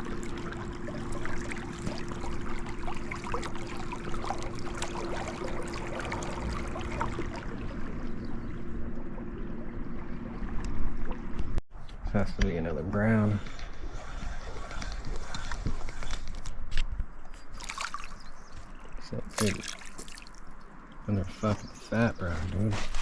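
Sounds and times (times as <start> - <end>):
small splashes: 0.0 - 8.4, 17.3 - 20.7
water lapping and trickling: 0.0 - 11.6, 12.4 - 23.0
low steady hum: 0.0 - 23.0.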